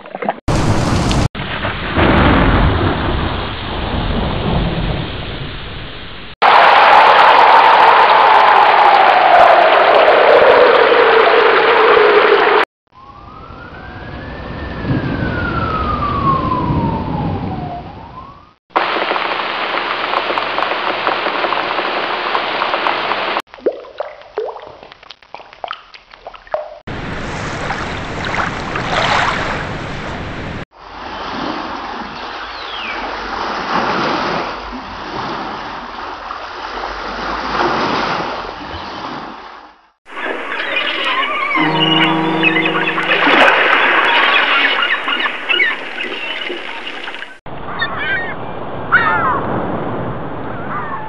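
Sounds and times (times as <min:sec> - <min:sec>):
water drips and splashes: 0:18.8 - 0:39.2, 0:43.0 - 0:47.4
rushing water: 0:18.8 - 0:47.4
rising and falling tone: 0:40.2 - 0:46.0.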